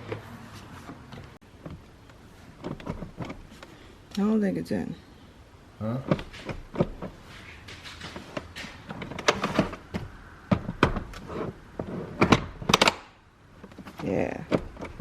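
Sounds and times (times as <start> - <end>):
car seat clicking into place: 9.0 - 13.8.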